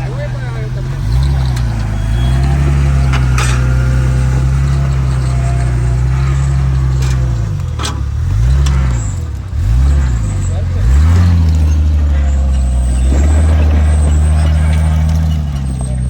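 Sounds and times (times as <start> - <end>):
off-road vehicle engine running: 0.0 - 16.0.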